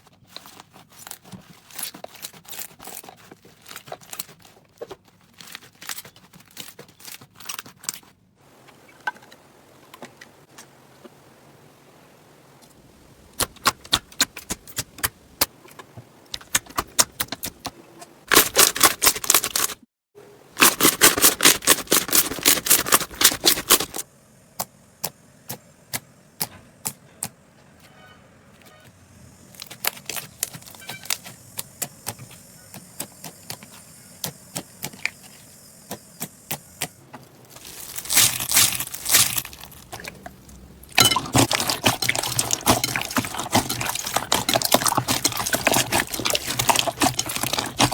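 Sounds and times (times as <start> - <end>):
slime crackling and popping: 20.6 - 24.0, 37.5 - 47.9.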